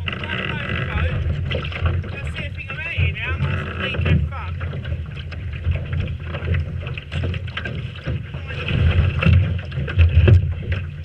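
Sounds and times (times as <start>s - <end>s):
water rushing along hull: 0.0s - 11.0s
wind buffeting microphone: 0.0s - 11.0s.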